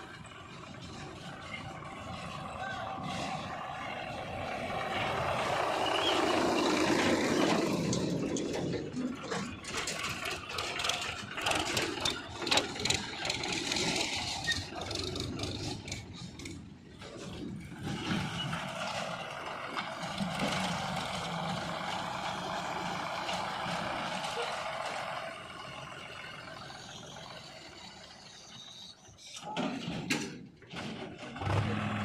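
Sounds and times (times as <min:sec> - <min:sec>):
diesel engine revving: 0:00.0 - 0:29.4, 0:30.8 - 0:32.0
sharp knocks and clatter: 0:07.4 - 0:19.2.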